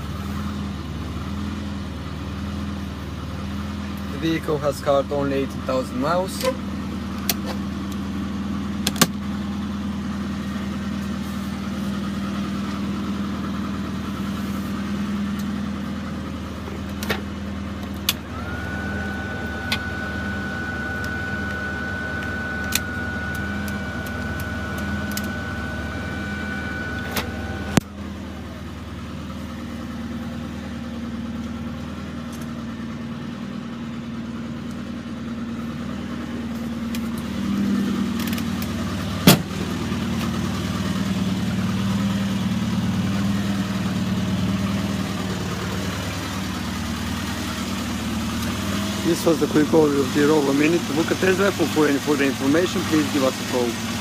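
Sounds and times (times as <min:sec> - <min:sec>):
car engine idling: 0:00.0 - 0:54.0
high-pitched tone: 0:18.6 - 0:27.8.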